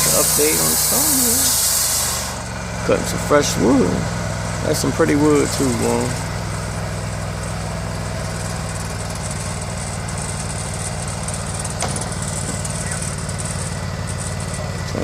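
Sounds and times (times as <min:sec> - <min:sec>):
hiss: 0:00.0 - 0:02.4
sawmill engine hum: 0:00.0 - 0:15.0.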